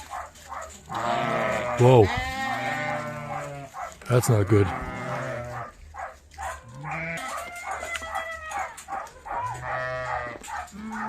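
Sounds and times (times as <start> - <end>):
livestock bleating: 0.9 - 5.7, 6.7 - 8.6, 9.4 - 11.0.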